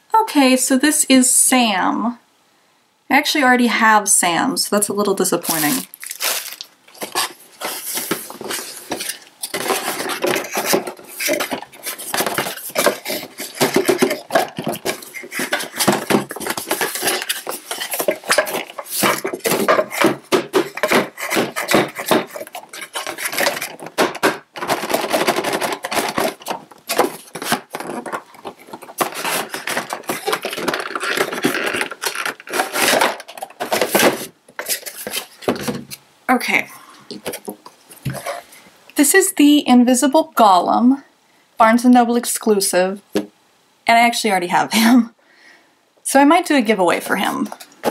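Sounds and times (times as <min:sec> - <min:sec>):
cardboard packaging being handled: 0:05.4 - 0:36.0, 0:46.9 - 0:47.9.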